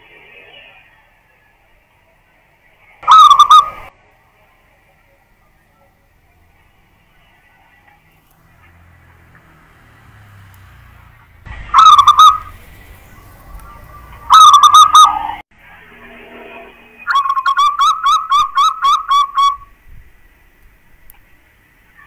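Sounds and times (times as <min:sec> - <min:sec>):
dove cooing loudly: 0:03.0 - 0:03.9, 0:11.7 - 0:12.6, 0:13.9 - 0:15.2, 0:17.1 - 0:19.6.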